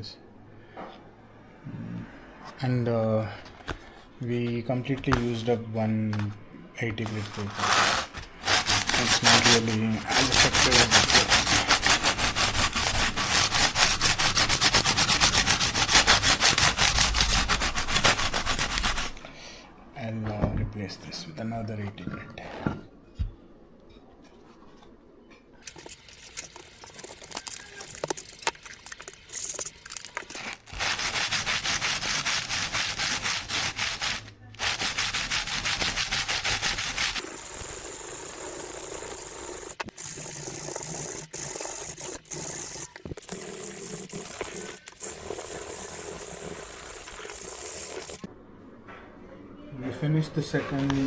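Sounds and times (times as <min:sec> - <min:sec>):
knife scratching on sandpaper: 0:07.0 - 0:19.2, 0:25.7 - 0:48.3
handling sounds and clicks: 0:25.6 - 0:30.9.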